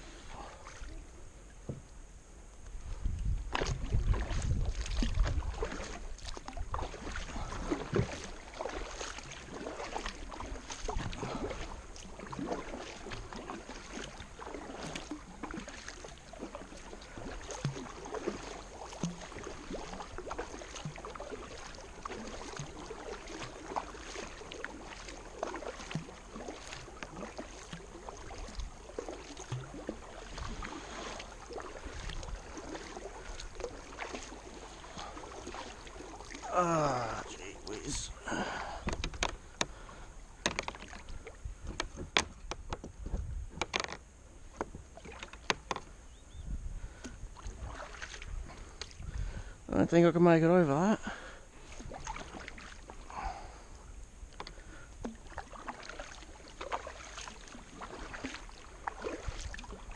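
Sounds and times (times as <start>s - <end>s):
paddle splashing water: 0.0s - 2.0s, 2.7s - 59.9s.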